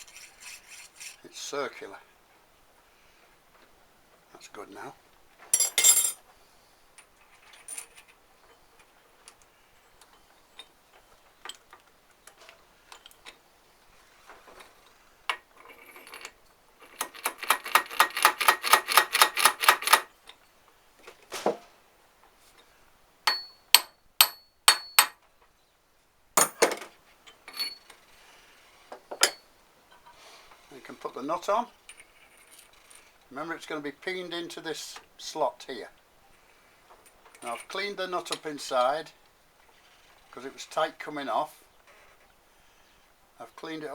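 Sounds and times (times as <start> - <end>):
ringing metallic taps: 23.3 - 25.2.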